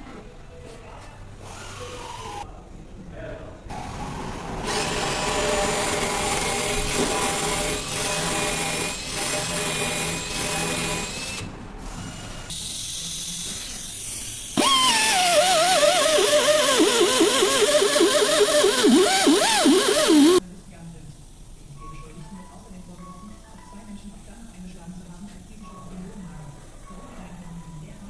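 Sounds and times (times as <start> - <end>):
power drill whining: 14.6 - 20.4.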